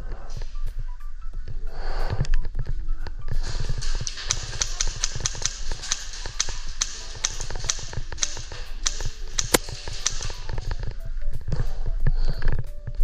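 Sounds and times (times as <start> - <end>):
airsoft guns firing: 3.4 - 11.0.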